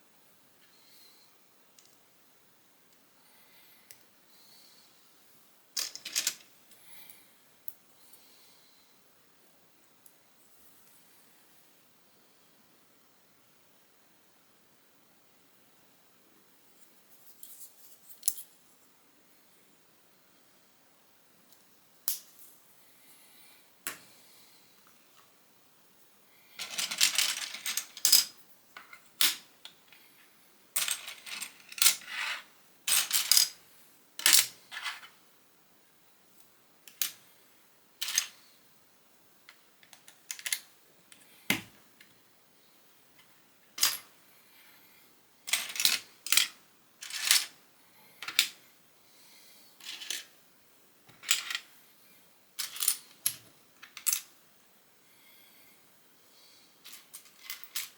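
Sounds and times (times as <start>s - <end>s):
small plastic pieces rattling: 26.6s - 28.3s.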